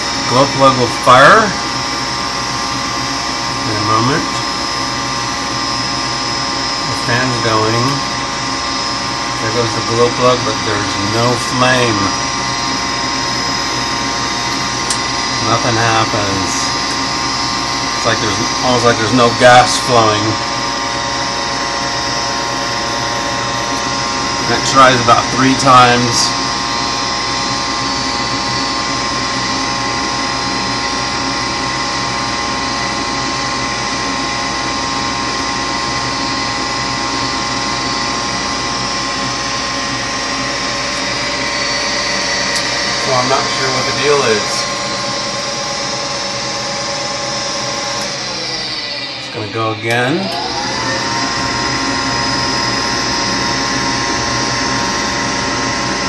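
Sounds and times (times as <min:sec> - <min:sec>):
furnace blower fan humming: 0:00.0 - 0:56.0.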